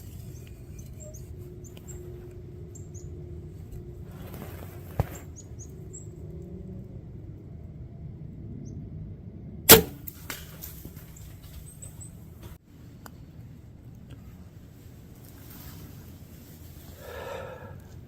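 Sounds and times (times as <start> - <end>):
small birds chirping: 0.0 - 3.9, 4.7 - 6.3, 11.0 - 12.6
faint cracks and rustles: 3.6 - 5.4, 10.0 - 13.2, 13.9 - 17.0
bow release crack: 9.7 - 11.0.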